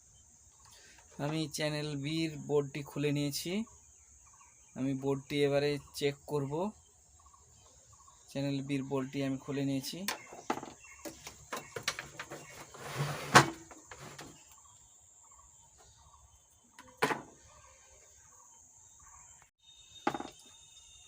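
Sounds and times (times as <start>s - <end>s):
short scrape: 12.3s - 14.4s.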